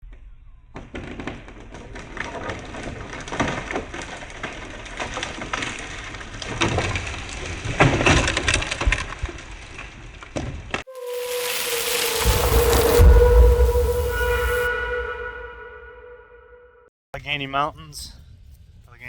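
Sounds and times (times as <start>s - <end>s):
tree cracking and splintering: 0.8s - 13.8s
branches snapping and crashing: 0.9s - 12.0s.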